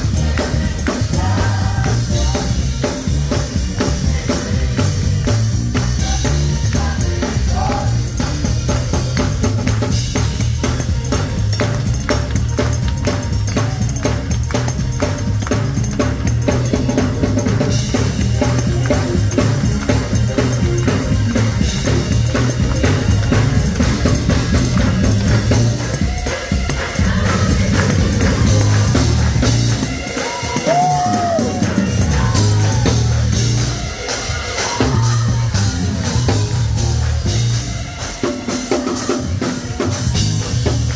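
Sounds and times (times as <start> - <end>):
drum kit playing a driving beat: 0.0 - 40.9
heavy bass line: 0.0 - 40.9.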